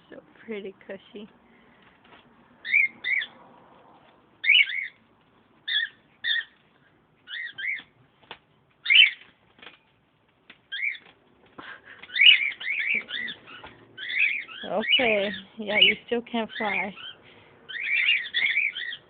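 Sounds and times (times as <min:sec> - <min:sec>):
lovebird chirping: 0:02.6 - 0:03.4, 0:04.4 - 0:05.0, 0:05.6 - 0:06.6, 0:07.2 - 0:08.0, 0:08.8 - 0:09.3, 0:10.7 - 0:11.1, 0:12.0 - 0:19.0.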